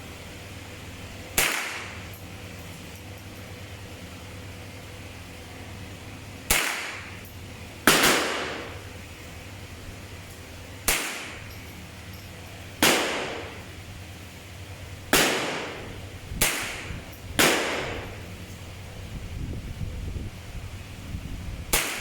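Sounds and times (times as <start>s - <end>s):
rifle shots with echo: 1.4s - 2.0s, 6.5s - 7.2s, 7.8s - 8.9s, 10.8s - 11.5s, 12.8s - 13.7s, 15.1s - 18.2s, 21.7s - 22.0s.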